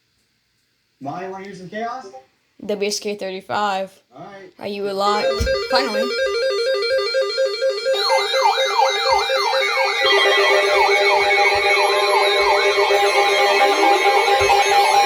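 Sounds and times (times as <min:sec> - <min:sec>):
hi-lo two-tone siren: 0:05.1 - 0:15.0
steady siren tones: 0:05.1 - 0:15.0
fast swept siren wail: 0:05.2 - 0:15.0.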